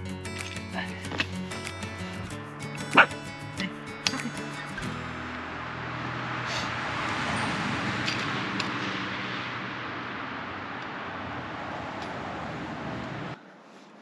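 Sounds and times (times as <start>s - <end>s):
vehicle road and engine noise: 4.7s - 13.4s.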